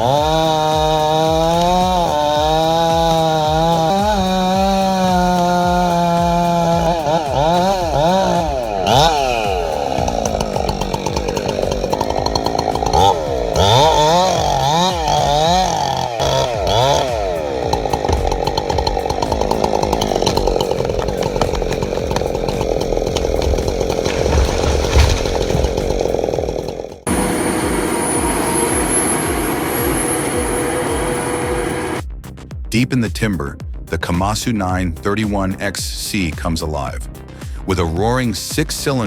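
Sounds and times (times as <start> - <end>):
chainsaw cutting wood: 0.0 - 32.0
machine with high whine: 27.0 - 32.0.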